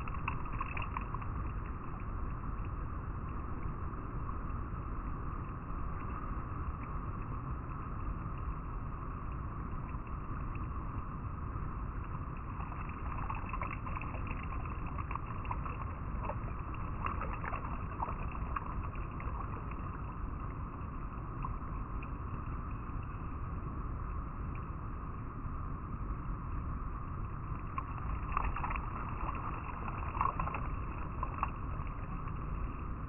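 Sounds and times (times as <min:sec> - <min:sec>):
river water flowing over rocks: 0:00.0 - 0:02.3, 0:12.0 - 0:23.0, 0:27.5 - 0:33.0
small splashes and trickles: 0:00.0 - 0:23.6, 0:27.2 - 0:33.0.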